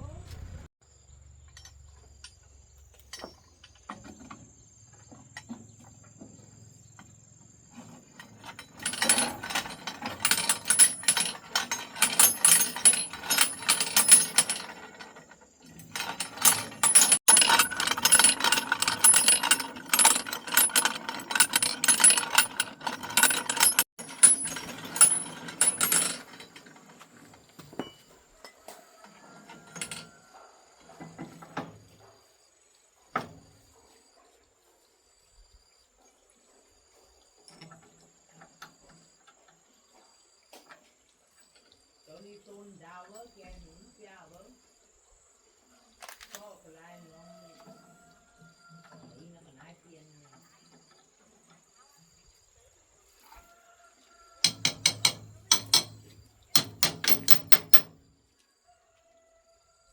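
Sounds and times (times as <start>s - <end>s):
hand tools clicking on metal: 8.2s - 26.7s, 54.4s - 58.0s.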